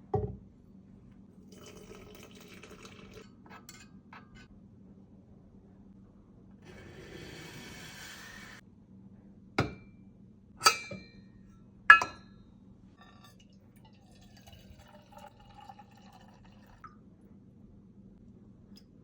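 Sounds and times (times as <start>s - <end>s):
glass clinks: 10.6s - 11.2s, 11.9s - 12.3s.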